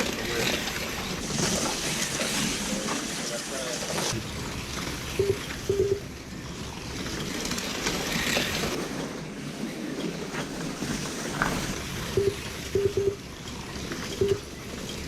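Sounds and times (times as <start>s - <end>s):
electronic double beep: 5.2s - 6.0s, 12.1s - 13.2s, 14.2s - 14.6s.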